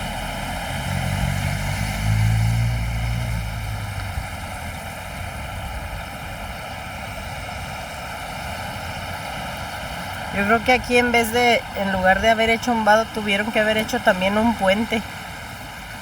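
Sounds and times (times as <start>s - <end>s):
vehicle engine passing: 0.0s - 6.5s
river rushing: 0.0s - 16.0s.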